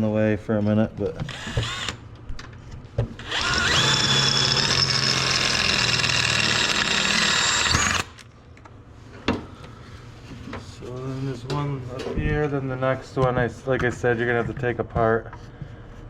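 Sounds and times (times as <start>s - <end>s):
power drill drilling: 1.3s - 2.0s, 3.2s - 8.2s.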